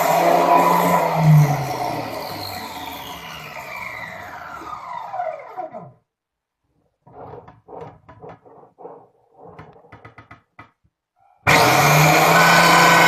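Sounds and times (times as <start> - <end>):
metal cutter motor whining: 0.0 - 6.0, 11.5 - 13.0
knocks and rattles of handling: 7.0 - 11.0.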